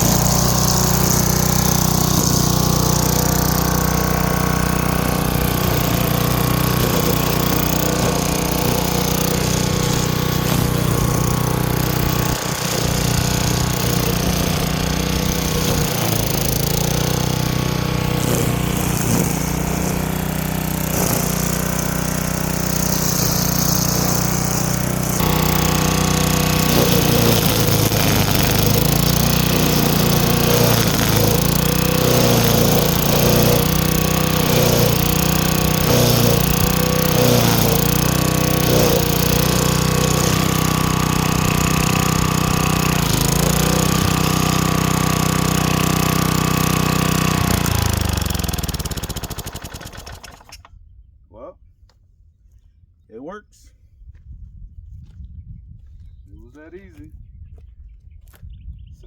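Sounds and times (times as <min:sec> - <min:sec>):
nylon line cutting weeds: 0:00.0 - 0:50.7
string trimmer engine running: 0:00.0 - 0:50.7.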